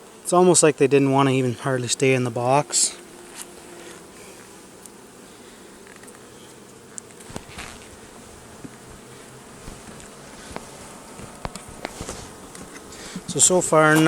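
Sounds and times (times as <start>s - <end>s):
honeybees buzzing: 0.0s - 14.0s.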